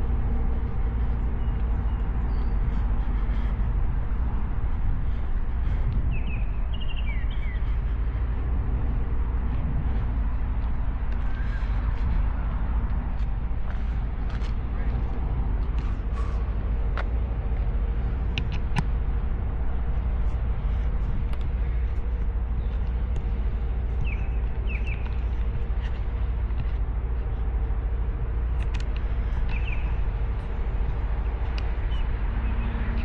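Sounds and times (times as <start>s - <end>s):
low rumble with hum: 0.0s - 33.0s
bird chirps: 6.1s - 7.8s, 24.0s - 25.2s, 29.5s - 30.0s.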